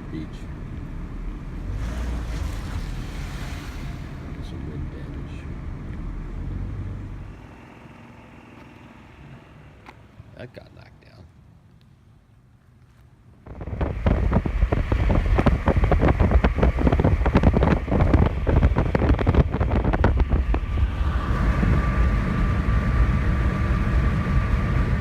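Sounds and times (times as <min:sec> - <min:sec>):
wind buffeting microphone: 0:13.3 - 0:25.0.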